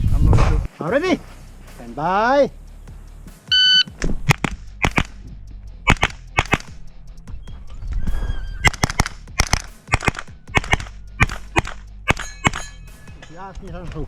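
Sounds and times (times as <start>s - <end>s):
gunshots: 4.2s - 5.2s, 5.8s - 6.8s, 8.6s - 12.8s.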